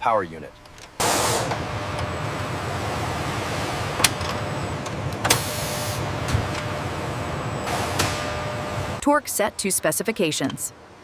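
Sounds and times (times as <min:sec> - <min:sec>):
mechanical whirring hum: 0:00.0 - 0:11.0.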